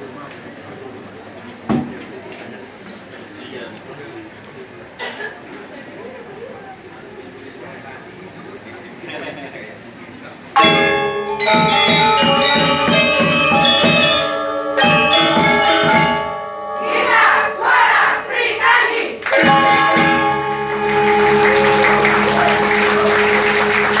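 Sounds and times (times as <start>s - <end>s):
choir singing sustained chords: 16.3s - 24.0s.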